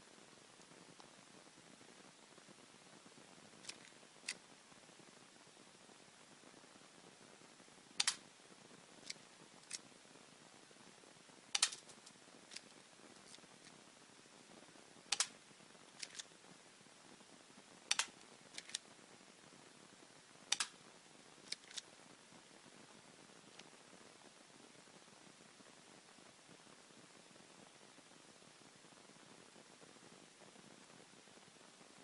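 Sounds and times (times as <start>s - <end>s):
faint clicks: 8.0s - 8.2s, 9.0s - 9.8s, 11.5s - 13.8s, 15.1s - 16.3s, 17.9s - 18.9s, 20.5s - 20.8s, 21.4s - 21.9s.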